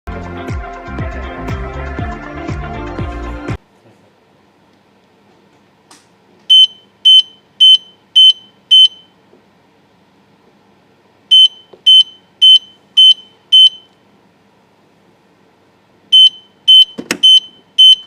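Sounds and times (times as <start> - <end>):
high alarm beeps: 6.5 - 9.1, 11.3 - 13.9, 16.2 - 18.0.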